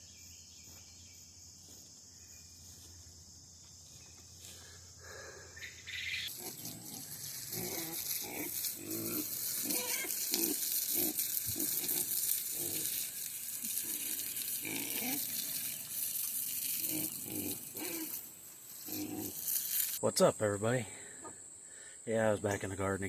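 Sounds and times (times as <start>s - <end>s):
farm animals grunting: 6.2s - 13.1s, 13.7s - 15.6s, 16.7s - 19.4s.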